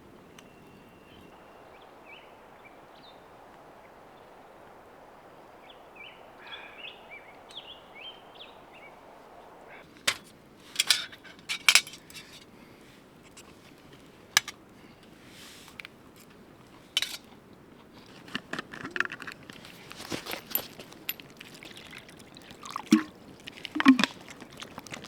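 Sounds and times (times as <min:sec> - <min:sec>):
cookware clinking and clattering: 0:10.8 - 0:12.4, 0:17.0 - 0:17.3.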